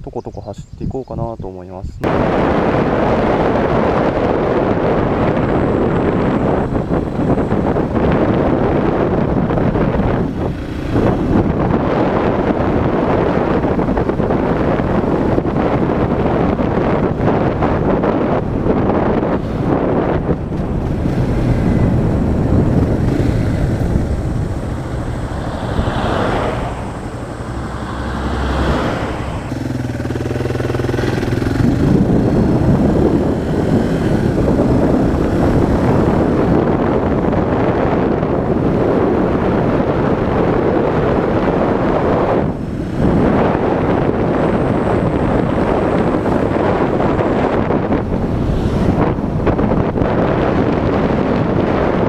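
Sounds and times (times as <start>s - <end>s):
wind rushing over microphone: 0.0s - 52.0s
motorcycle engine running: 2.1s - 26.1s, 26.9s - 39.8s.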